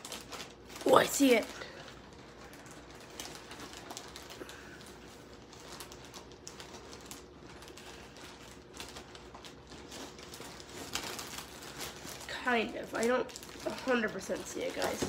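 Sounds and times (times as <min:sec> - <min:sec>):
plastic packaging pulled apart by hand: 0:00.0 - 0:15.0.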